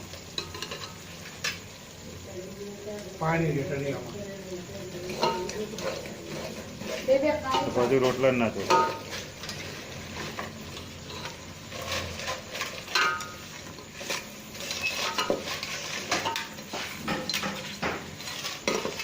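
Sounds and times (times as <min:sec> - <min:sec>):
food sizzling: 0:00.0 - 0:19.0
utensil scraping in a pot: 0:04.7 - 0:19.0
metal clinking on metal: 0:12.9 - 0:13.4.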